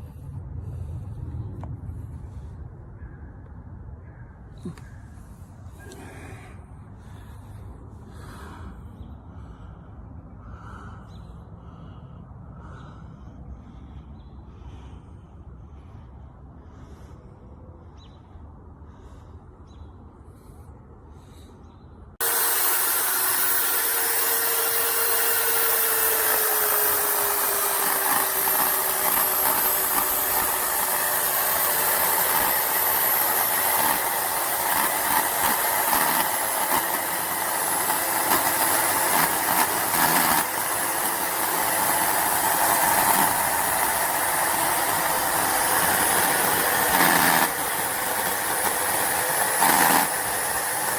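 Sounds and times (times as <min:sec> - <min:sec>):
loud steady hissing machine: 0:22.2 - 0:50.9.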